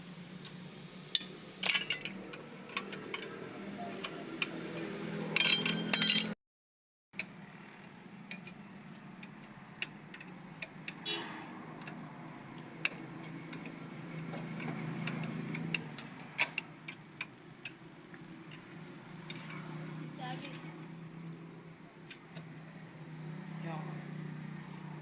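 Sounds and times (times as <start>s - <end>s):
metallic clicks and taps of tools: 0.4s - 3.4s, 4.0s - 6.1s, 7.2s - 11.0s, 11.8s - 12.0s, 12.6s - 18.7s.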